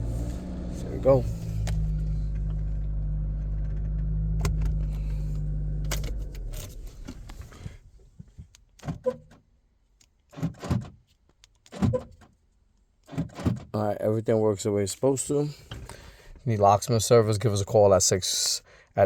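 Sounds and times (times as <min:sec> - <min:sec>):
car engine idling: 0:00.0 - 0:08.1.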